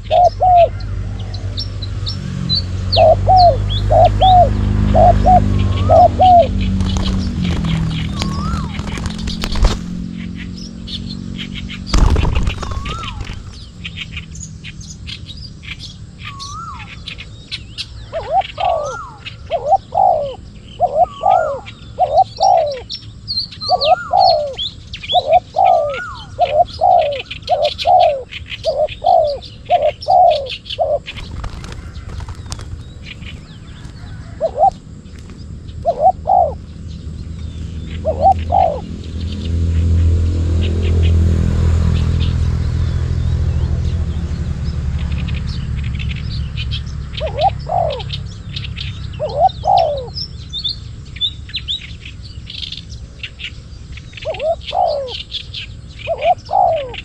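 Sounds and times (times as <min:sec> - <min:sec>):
small birds chirping: 0:00.0 - 0:41.2, 0:41.8 - 0:57.0
doves cooing: 0:03.0 - 0:10.3, 0:12.0 - 0:14.1, 0:18.1 - 0:22.8, 0:25.2 - 0:36.7, 0:38.0 - 0:38.8, 0:47.2 - 0:48.2, 0:49.2 - 0:50.2, 0:54.2 - 0:55.3, 0:56.1 - 0:57.0
sharp knock: 0:12.0 - 0:13.8.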